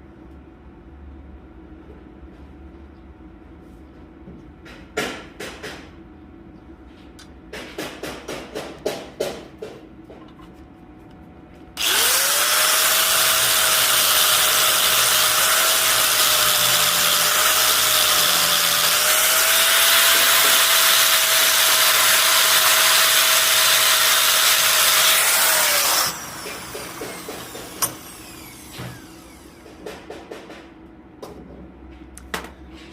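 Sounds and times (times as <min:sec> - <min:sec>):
angle grinder grinding steel: 0:11.8 - 0:29.5.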